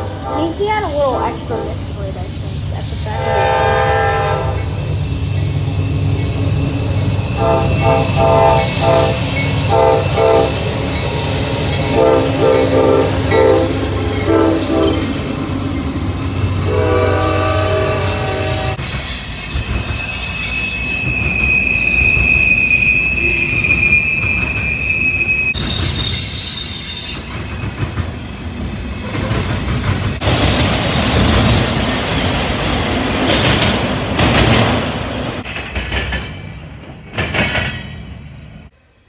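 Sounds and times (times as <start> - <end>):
train horn blasts: 0.0 - 2.1, 3.0 - 4.7, 7.4 - 10.7, 11.8 - 15.5, 16.4 - 18.8
train rumble: 0.0 - 38.8
high wheel squeal: 1.9 - 34.0.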